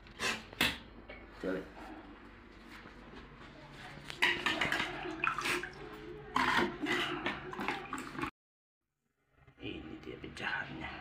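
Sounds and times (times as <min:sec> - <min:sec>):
water splashing and running: 0:04.3 - 0:08.3.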